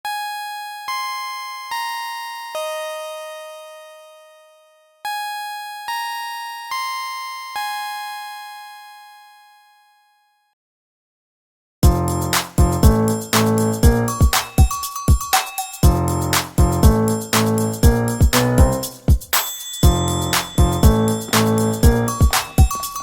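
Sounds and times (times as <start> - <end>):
synthesized keyboard chime jingle: 11.8 - 23.0.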